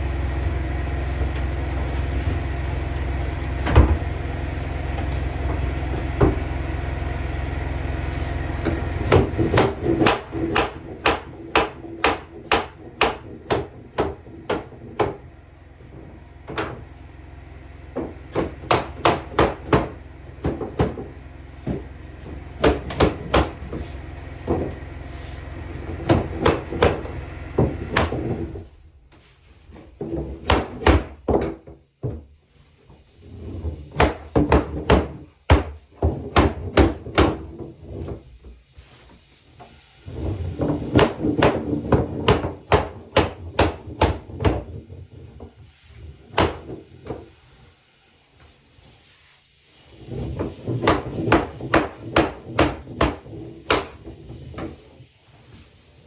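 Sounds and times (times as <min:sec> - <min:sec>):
hammer striking wood: 0:08.6 - 0:15.3, 0:17.9 - 0:21.9, 0:22.6 - 0:23.8, 0:25.9 - 0:28.4, 0:30.4 - 0:31.8, 0:34.0 - 0:37.4, 0:40.9 - 0:44.7, 0:46.4 - 0:47.2, 0:50.8 - 0:54.7.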